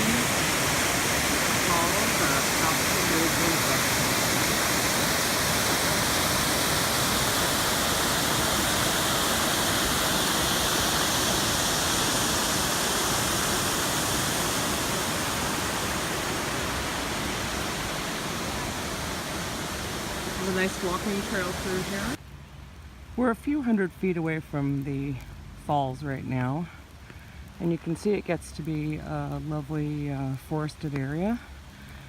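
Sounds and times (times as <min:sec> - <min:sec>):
waterfall rushing: 0:00.0 - 0:22.2.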